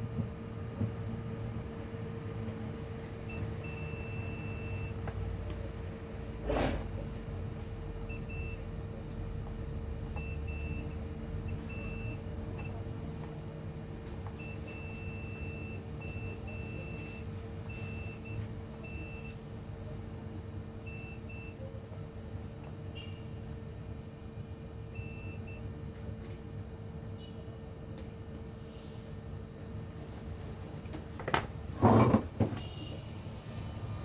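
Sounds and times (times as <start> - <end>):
multimeter continuity beeps: 3.3 - 5.0, 8.1 - 8.7, 10.1 - 12.8, 14.4 - 19.4, 20.8 - 21.6, 24.9 - 25.7.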